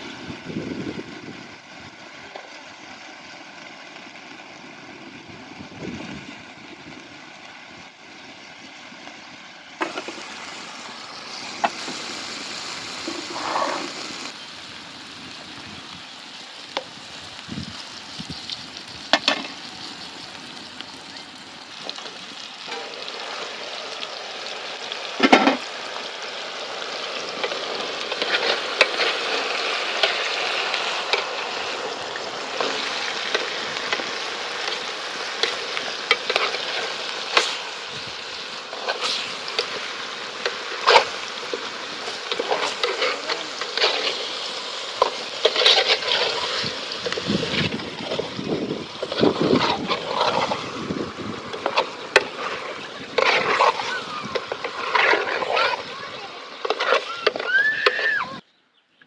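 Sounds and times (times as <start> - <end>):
food sizzling in a pan: 0.0 - 58.4
utensil clicking and scraping: 32.4 - 37.7, 38.7 - 48.2, 56.6 - 58.1.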